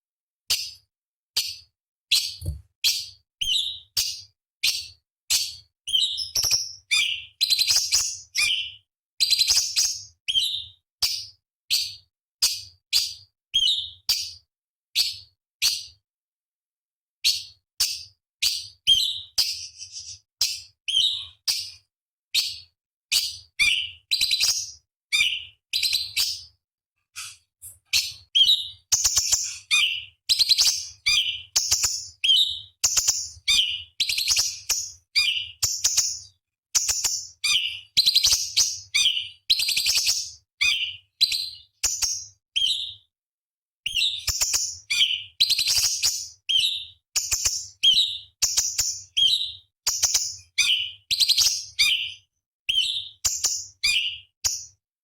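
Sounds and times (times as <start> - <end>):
bird singing high chattering song: 1.4 - 16.0, 17.2 - 26.6, 27.2 - 43.1, 43.9 - 54.8.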